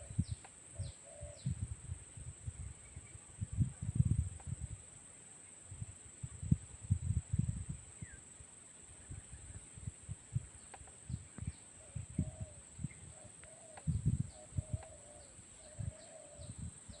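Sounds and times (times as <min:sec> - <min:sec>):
faint high bird chirps: 0:10.6 - 0:17.0.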